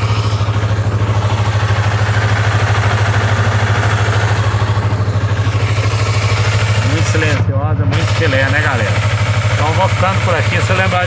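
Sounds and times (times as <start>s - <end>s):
motorcycle engine idling: 0.0s - 11.0s.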